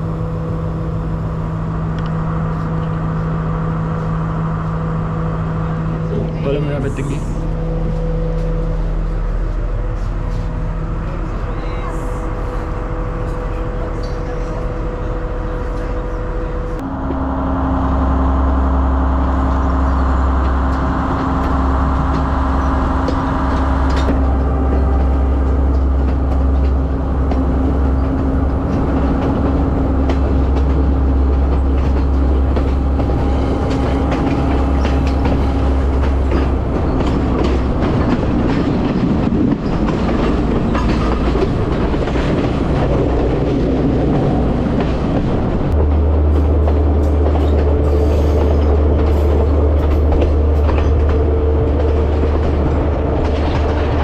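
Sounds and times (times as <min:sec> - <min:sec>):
diesel train drone: 0:00.0 - 0:54.0
wheels clattering over rail joints: 0:19.5 - 0:54.0.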